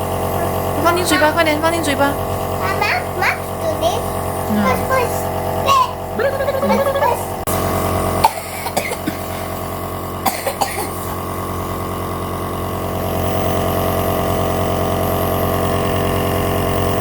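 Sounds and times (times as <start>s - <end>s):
nebuliser mechanical hum: 0.0s - 17.0s
child coughing: 4.6s - 7.3s, 8.2s - 11.3s.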